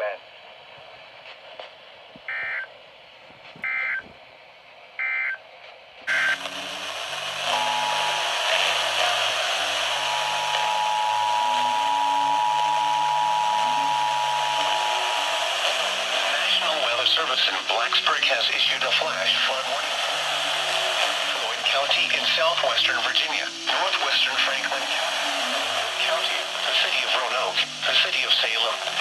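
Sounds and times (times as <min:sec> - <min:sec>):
two-tone attention signal: 0:02.3 - 0:02.7, 0:06.1 - 0:06.4, 0:07.4 - 0:08.8, 0:09.9 - 0:15.4
steady hiss: 0:06.1 - 0:29.0.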